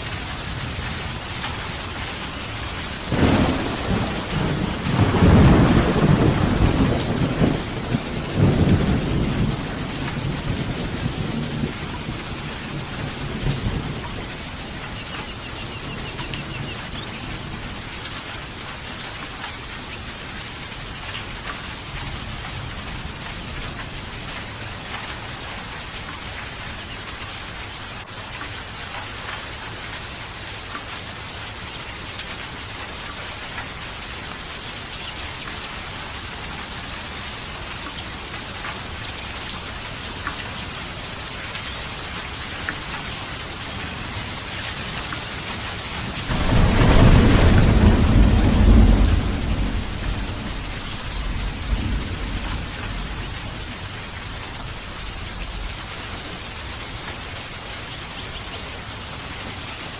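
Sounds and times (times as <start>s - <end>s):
steady rain falling: 0.0s - 59.9s
low thunder rumble: 3.0s - 17.9s, 46.1s - 55.9s.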